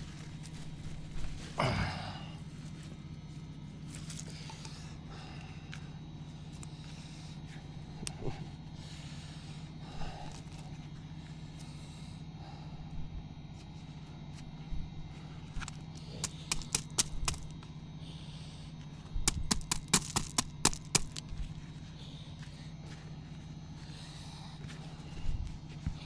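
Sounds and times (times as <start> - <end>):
steady low hum: 0.0 - 26.0
woody stems snapping: 15.6 - 17.6, 19.2 - 21.3.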